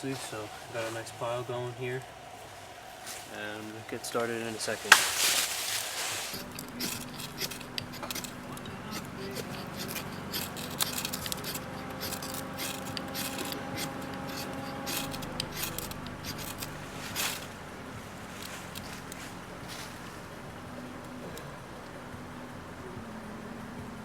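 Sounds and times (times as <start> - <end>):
steel knife scraping: 4.9 - 17.6.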